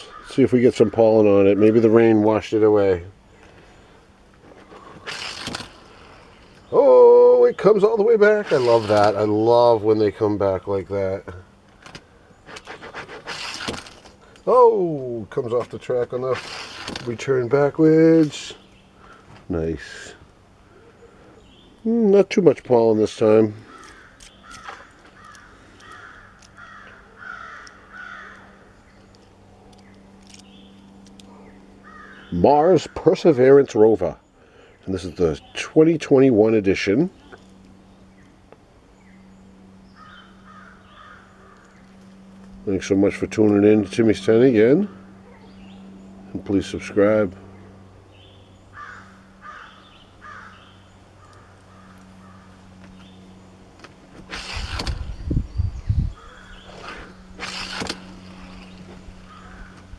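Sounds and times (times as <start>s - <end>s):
crow cawing: 0.0s - 0.4s, 23.6s - 28.7s, 31.8s - 32.3s, 39.9s - 41.8s, 48.7s - 52.6s, 59.2s - 59.9s.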